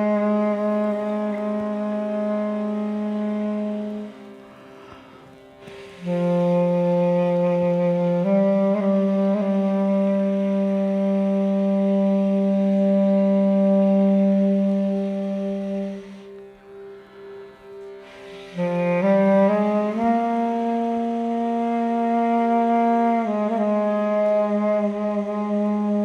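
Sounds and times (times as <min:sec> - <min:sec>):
loud held note: 0:00.0 - 0:08.3
steady drone tone: 0:00.0 - 0:26.0.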